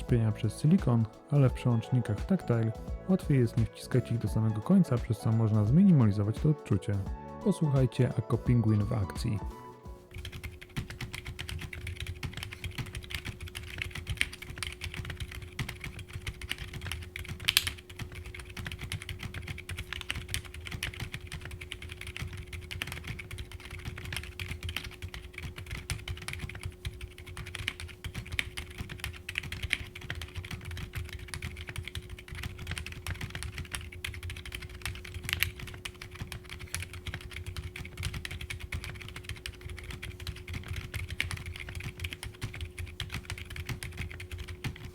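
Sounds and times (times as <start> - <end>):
muted mechanical keyboard typing: 10.1 - 44.9.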